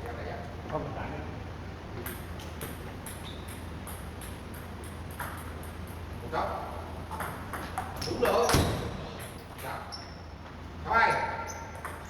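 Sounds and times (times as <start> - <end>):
table tennis balls clicking: 2.0 - 6.0, 7.1 - 8.4, 11.7 - 12.0.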